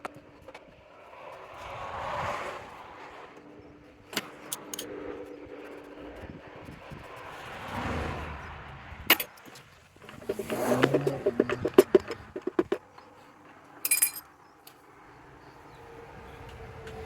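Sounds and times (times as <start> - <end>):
cars passing by: 0.0 - 17.0
sharp metal clinks: 13.8 - 14.3.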